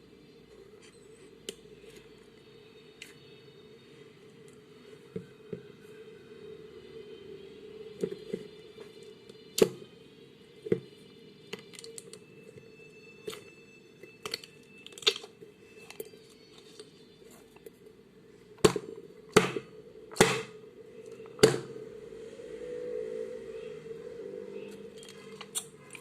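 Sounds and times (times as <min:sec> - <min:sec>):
slime popping and crackling: 0:14.1 - 0:15.3.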